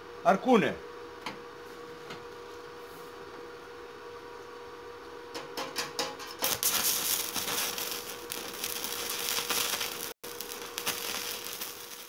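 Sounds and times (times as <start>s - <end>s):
arc welding crackling sizzle: 5.5s - 12.0s
welding arc ticks: 6.4s - 12.0s.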